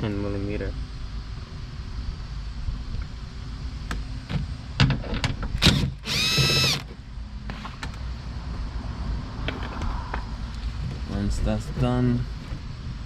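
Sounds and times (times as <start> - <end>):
cordless power tool whirring: 5.6 - 6.9.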